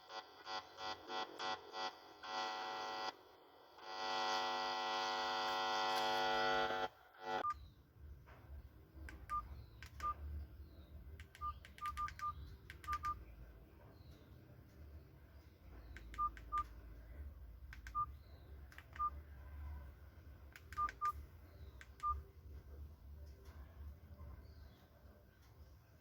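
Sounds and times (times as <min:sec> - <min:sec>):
buzzy held electronic tone: 0:00.0 - 0:07.4
clicks: 0:09.0 - 0:10.2, 0:11.1 - 0:13.3, 0:15.7 - 0:16.9, 0:17.7 - 0:18.1, 0:18.7 - 0:19.2, 0:20.5 - 0:22.2.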